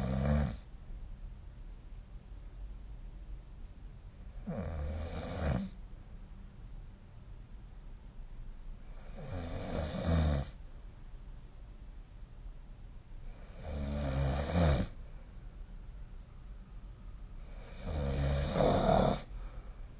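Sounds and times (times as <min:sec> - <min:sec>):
person snoring: 0:00.0 - 0:00.6, 0:04.4 - 0:05.8, 0:09.0 - 0:10.6, 0:13.3 - 0:15.0, 0:17.5 - 0:19.3.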